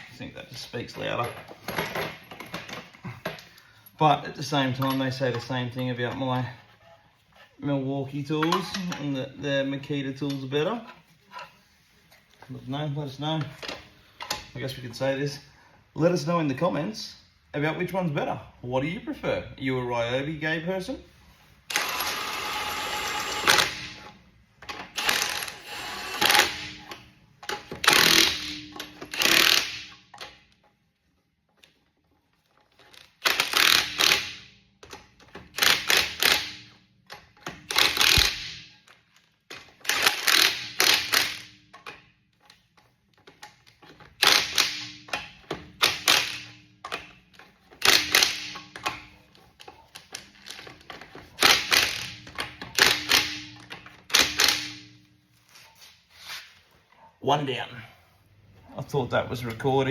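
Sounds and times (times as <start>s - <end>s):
impact wrench hammering nuts: 21.7s - 30.4s, 33.2s - 38.8s, 39.5s - 42.0s, 43.8s - 49.3s, 49.9s - 55.0s.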